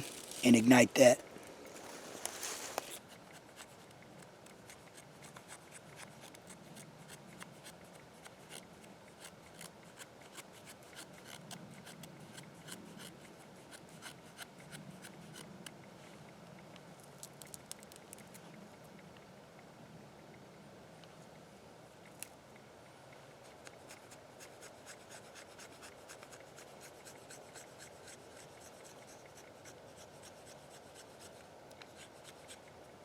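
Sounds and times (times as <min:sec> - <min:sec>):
knife scraping dry wood: 0:01.7 - 0:15.5, 0:23.8 - 0:32.7.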